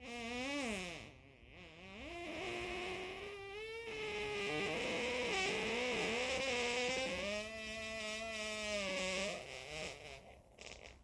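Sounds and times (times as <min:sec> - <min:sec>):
long wavering fart: 0:06.2 - 0:11.0.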